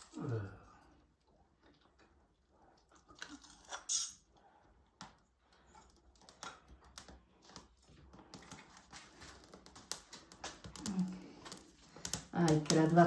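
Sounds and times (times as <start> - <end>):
faint fire crackles: 5.4 - 13.0.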